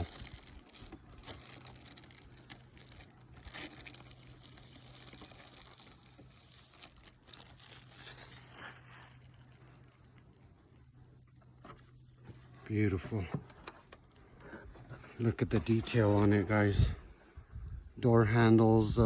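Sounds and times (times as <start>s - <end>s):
plastic packaging crinkling: 0.0s - 12.5s.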